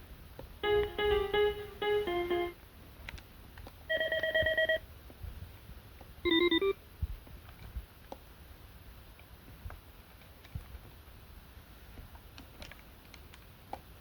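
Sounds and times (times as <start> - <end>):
electronic phone ringtones: 0.6 - 2.6, 3.9 - 4.8, 6.3 - 6.8.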